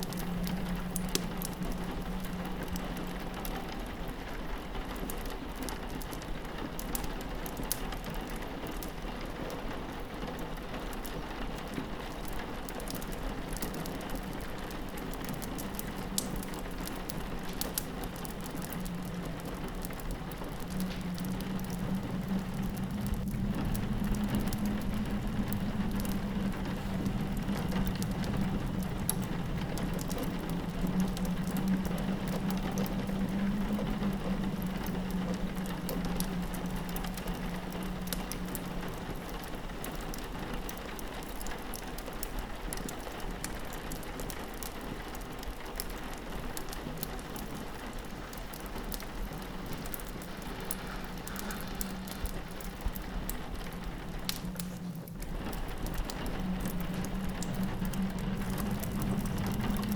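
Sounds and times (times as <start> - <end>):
rain pattering on window glass: 0.0 - 59.9
wood fire crackling: 0.0 - 59.9
low drone: 47.4 - 59.9.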